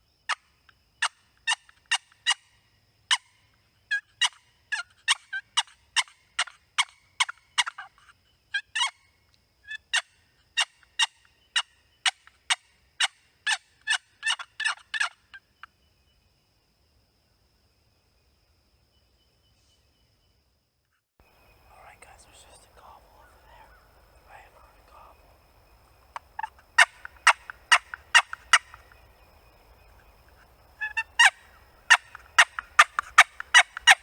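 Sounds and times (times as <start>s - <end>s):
turkey yelps and cutts: 26.1s - 29.1s, 30.8s - 34.0s.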